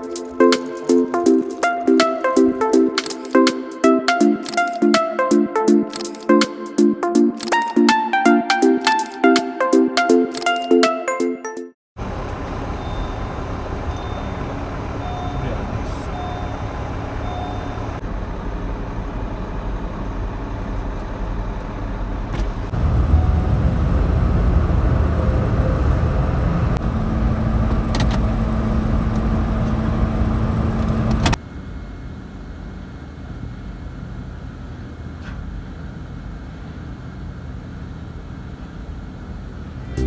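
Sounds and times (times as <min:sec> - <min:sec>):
motor vehicle rumble: 0:12.0 - 0:40.0.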